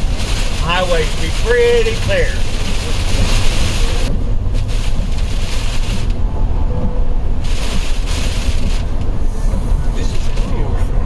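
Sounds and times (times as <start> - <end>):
tyres hissing on wet road: 0.0 - 6.2, 7.4 - 10.8
car road noise rumble: 0.0 - 11.0.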